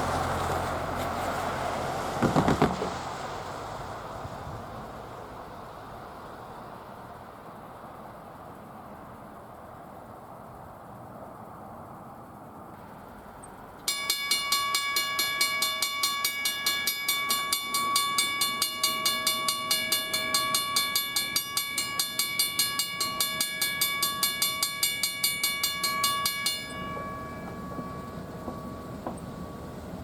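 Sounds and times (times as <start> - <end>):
crossing bell ringing rapidly: 13.8 - 30.0.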